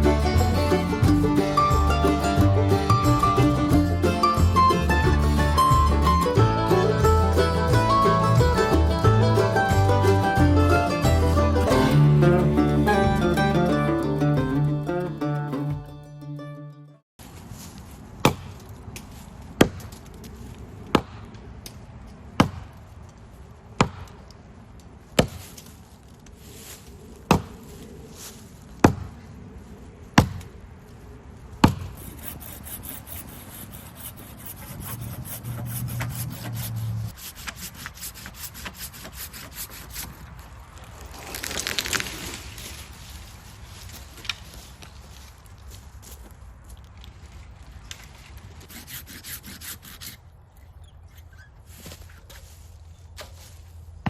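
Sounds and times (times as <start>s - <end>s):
axe chopping wood: 18.2s - 18.6s, 19.6s - 20.0s, 20.9s - 21.3s, 22.4s - 22.7s, 23.8s - 24.2s, 25.2s - 25.5s, 27.3s - 27.6s, 28.8s - 29.1s, 30.2s - 30.5s, 31.6s - 32.0s
hand saw cutting wood: 31.6s - 40.4s, 48.6s - 50.2s.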